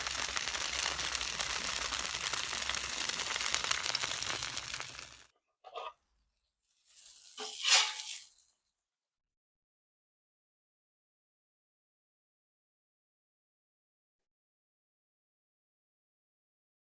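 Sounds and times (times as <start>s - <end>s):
food sizzling on a griddle: 0.0s - 5.3s, 6.8s - 8.5s.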